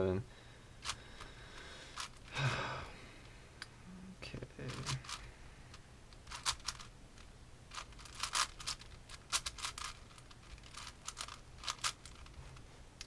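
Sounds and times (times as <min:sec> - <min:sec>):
puzzle cube clicking: 0:04.7 - 0:05.2, 0:06.1 - 0:12.4.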